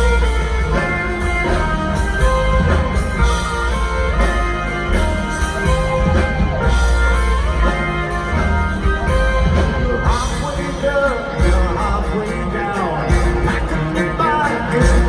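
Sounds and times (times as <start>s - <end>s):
bass and drums: 0.0s - 15.0s
electric guitar: 0.0s - 15.0s.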